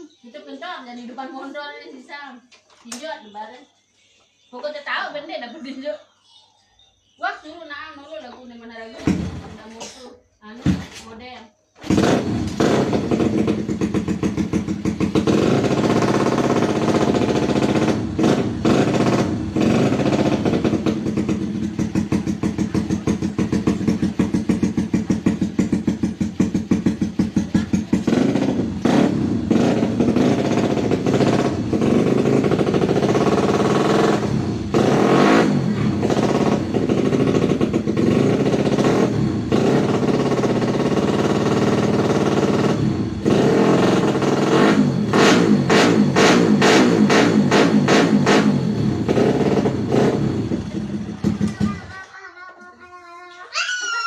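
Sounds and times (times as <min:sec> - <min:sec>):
motorcycle engine revving: 0:09.0 - 0:10.0, 0:11.8 - 0:52.0.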